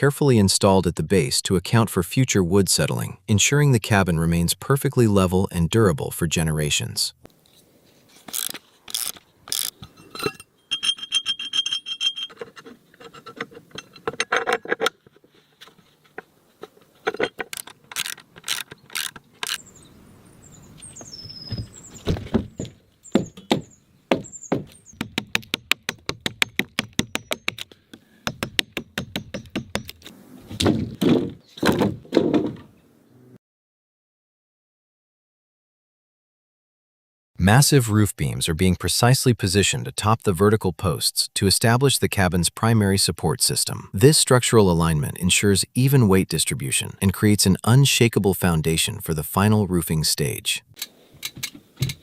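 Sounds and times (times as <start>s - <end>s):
hand tool knocks and clicks: 21.5s - 30.0s.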